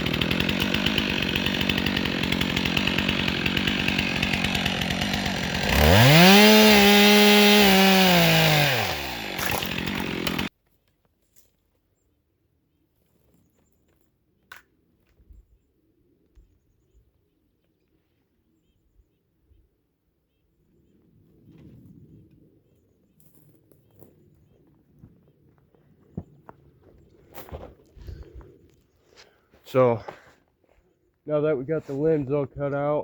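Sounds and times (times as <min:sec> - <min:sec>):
chainsaw idling and revving: 0:00.0 - 0:10.5.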